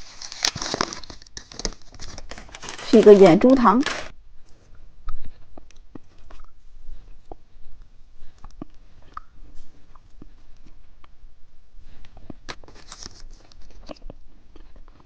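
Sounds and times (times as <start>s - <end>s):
plastic packaging clicks: 0.1s - 4.1s.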